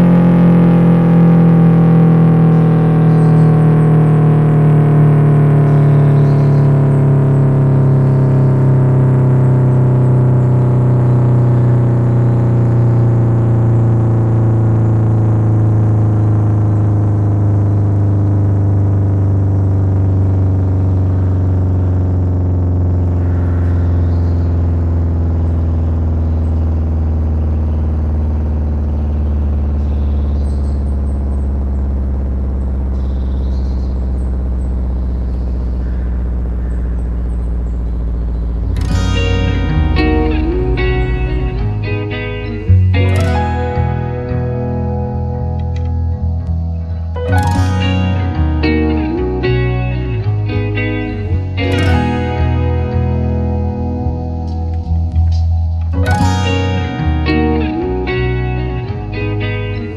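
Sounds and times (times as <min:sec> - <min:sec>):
warning siren winding down: 0:00.0 - 0:59.9.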